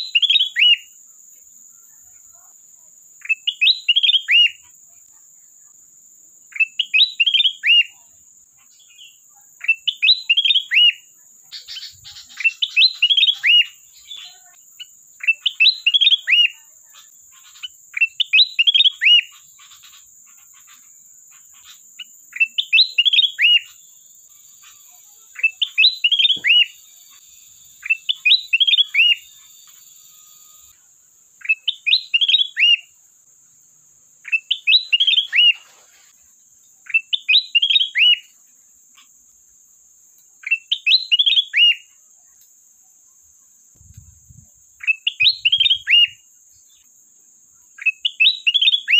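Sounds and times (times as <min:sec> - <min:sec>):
bulbul singing whistled phrases: 0:00.0 - 0:01.0, 0:03.2 - 0:05.2, 0:06.5 - 0:30.8, 0:31.4 - 0:33.0, 0:34.2 - 0:35.7, 0:36.8 - 0:38.3, 0:40.4 - 0:42.0, 0:43.9 - 0:46.9, 0:47.6 - 0:48.9.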